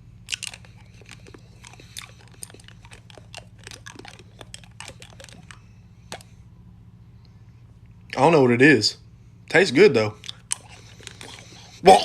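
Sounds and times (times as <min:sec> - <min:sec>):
crunchy chewing: 0:00.0 - 0:06.5, 0:10.1 - 0:12.0
low steady hum: 0:00.0 - 0:12.0.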